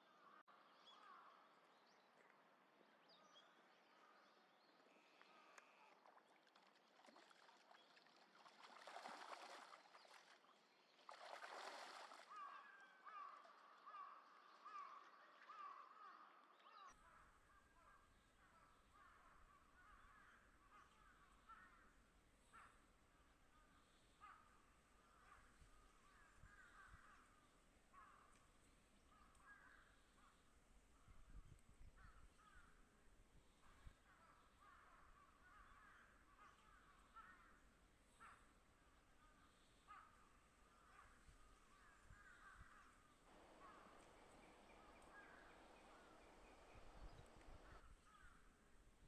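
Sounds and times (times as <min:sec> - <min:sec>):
faint bird calls: 0:03.4 - 0:06.2, 0:11.1 - 0:32.8, 0:33.4 - 0:48.7
wild birds calling: 0:39.8 - 0:48.4.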